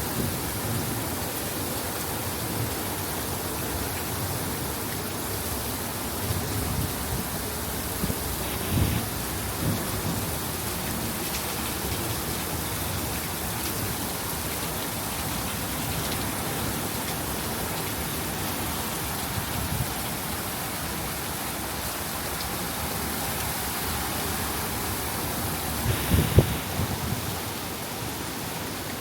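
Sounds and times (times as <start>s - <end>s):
steady rain falling: 0.0s - 29.0s.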